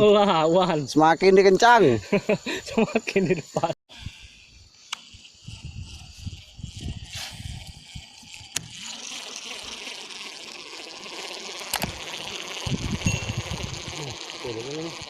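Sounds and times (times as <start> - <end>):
sharp clicks: 8.5 - 8.8, 11.7 - 12.0.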